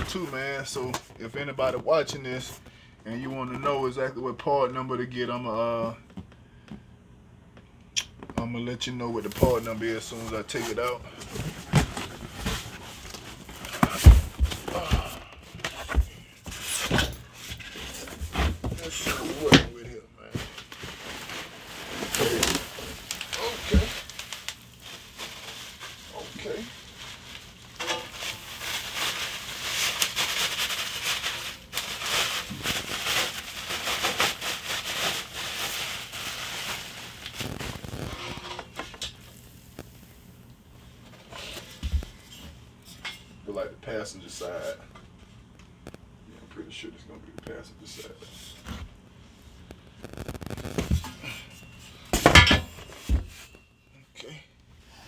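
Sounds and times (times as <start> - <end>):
cardboard rustling and scraping: 9.2 - 40.1, 40.8 - 42.7, 49.6 - 53.6.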